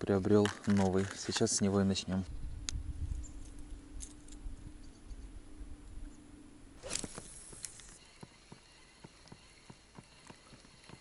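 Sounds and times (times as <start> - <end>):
brief swish: 6.8 - 7.4.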